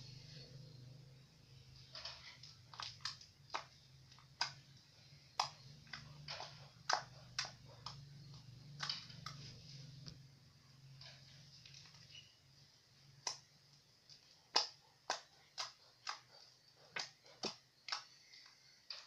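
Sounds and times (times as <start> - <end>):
sharp clicks and pops: 1.9 - 10.2, 13.2 - 19.0.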